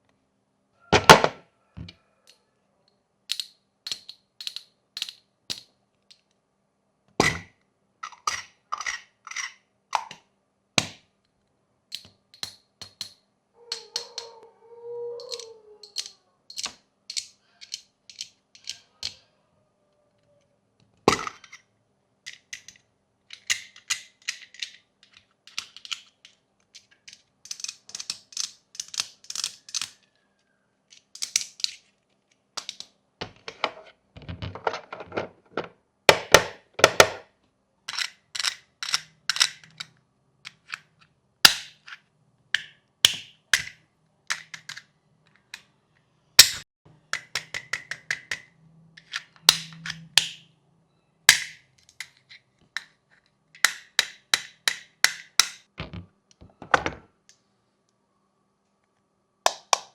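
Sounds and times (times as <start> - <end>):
plastic fidget toys clicking: 15.2 - 19.2, 22.3 - 30.0, 47.1 - 50.4.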